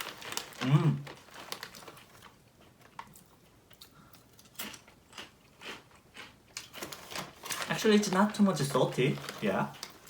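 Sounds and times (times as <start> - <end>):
person chewing potato chips: 0.0 - 7.6.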